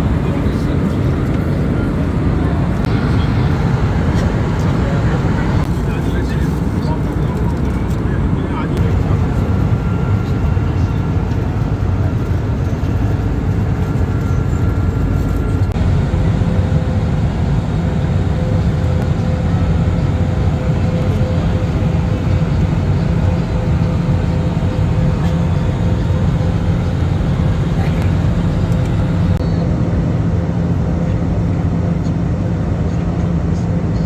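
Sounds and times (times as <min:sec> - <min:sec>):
jet engine rumble in cabin: 0:00.0 - 0:34.0.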